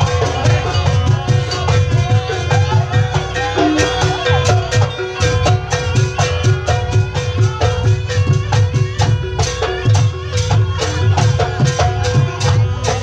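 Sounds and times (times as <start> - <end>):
drums and struck pitched notes: 0.0 - 13.0.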